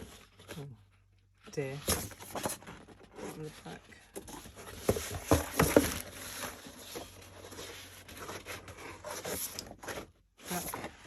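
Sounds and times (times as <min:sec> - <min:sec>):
paper rustling: 0:01.7 - 0:11.0
paper crinkles and taps: 0:04.2 - 0:08.6.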